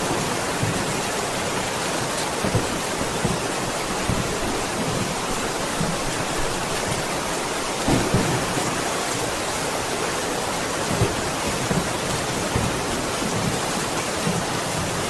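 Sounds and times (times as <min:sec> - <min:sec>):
low thunder rumbles: 0:00.0 - 0:09.6
steady rain hissing: 0:00.0 - 0:15.0.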